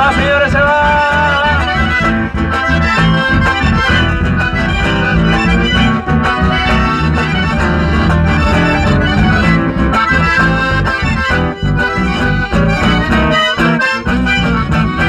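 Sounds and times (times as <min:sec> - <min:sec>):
accordions playing chords and melody: 0:00.0 - 0:15.0
steady bass rhythm: 0:02.2 - 0:13.3.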